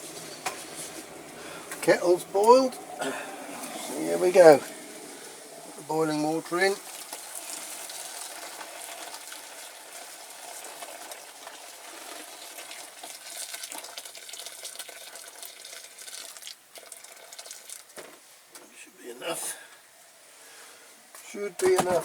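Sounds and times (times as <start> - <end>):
boiling water pouring from kettle: 0.0 - 18.3
small crackles: 6.8 - 18.7.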